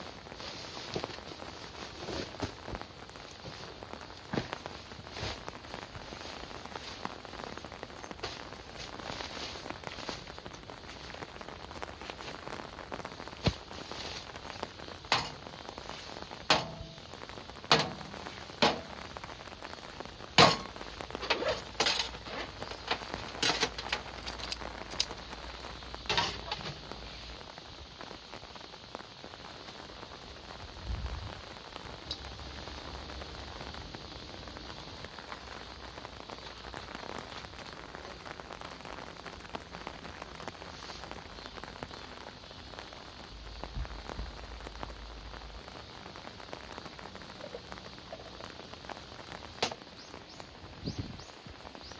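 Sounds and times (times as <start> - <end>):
steady rain falling: 0.0 - 51.9
sharp clicks and knocks: 15.1 - 15.6, 16.5 - 17.1, 17.7 - 19.1, 20.4 - 25.2, 49.6 - 49.9.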